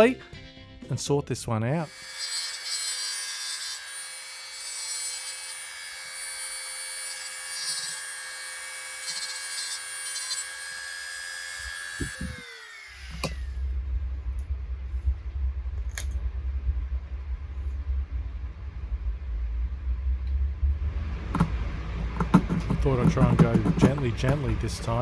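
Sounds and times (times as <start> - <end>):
rotary tool grinding metal: 1.8 - 13.6, 22.0 - 25.0
low rumble: 13.6 - 25.0
scattered knocks: 21.4 - 25.0.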